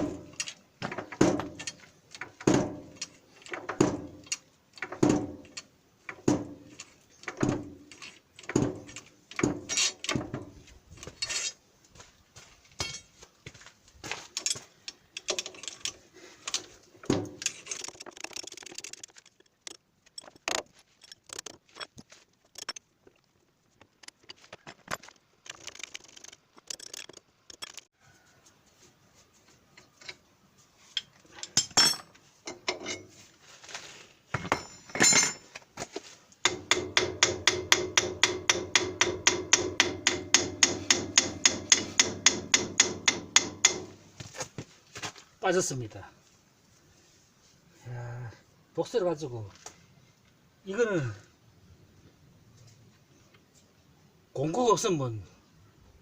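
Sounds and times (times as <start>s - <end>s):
tools clinking against steel: 1.4s - 10.2s, 12.8s - 13.2s, 14.3s - 22.9s, 30.9s - 33.2s, 34.4s - 35.6s.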